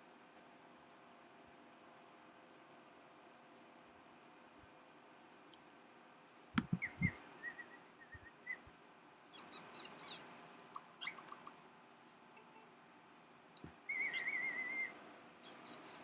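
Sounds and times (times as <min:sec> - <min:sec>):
dull thumps: 0:06.6 - 0:07.1
cockatiel chirping and whistling: 0:06.6 - 0:08.6, 0:09.3 - 0:10.2, 0:11.0 - 0:11.5, 0:13.9 - 0:16.0.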